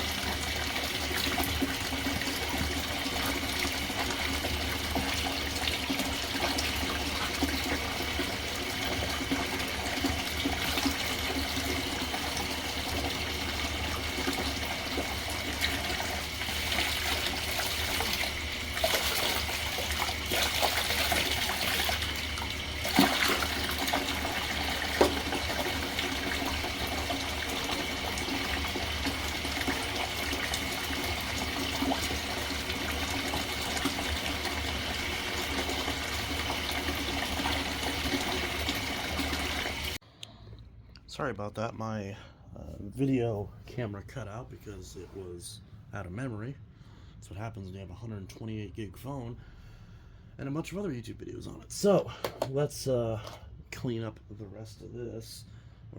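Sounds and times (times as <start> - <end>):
water running from a tap: 0.0 - 40.0.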